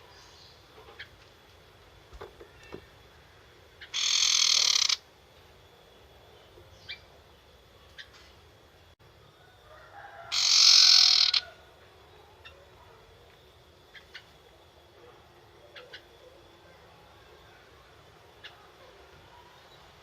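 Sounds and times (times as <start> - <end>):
bird harsh rasping chatter: 3.8 - 5.0, 10.3 - 11.5.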